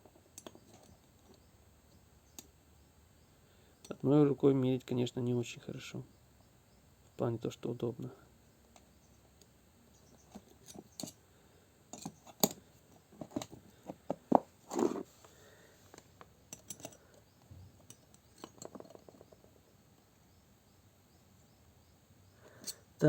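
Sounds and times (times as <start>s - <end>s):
metallic clicks of caliper: 16.5s - 17.2s.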